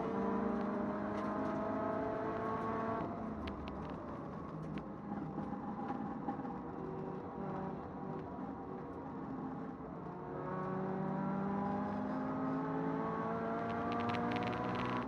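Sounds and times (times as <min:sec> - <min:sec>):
car engine accelerating: 0:10.3 - 0:15.0
fast rattling clicking: 0:13.6 - 0:15.0.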